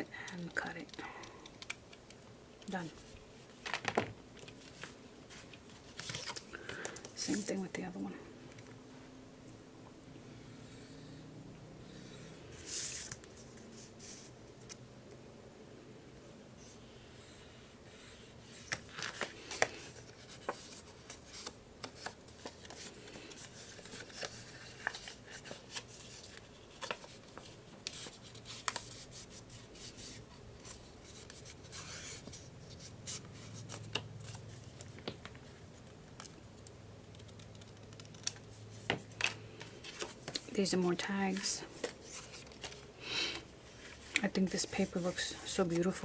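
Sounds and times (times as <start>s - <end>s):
paper rustling: 3.0s - 7.5s, 18.5s - 36.3s, 37.2s - 42.9s.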